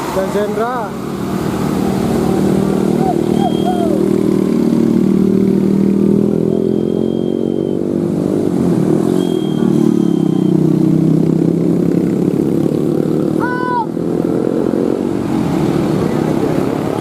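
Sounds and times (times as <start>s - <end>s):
diesel bus engine droning: 0.0s - 14.4s
thin high whistle: 3.0s - 4.0s, 6.3s - 8.0s, 9.1s - 10.8s.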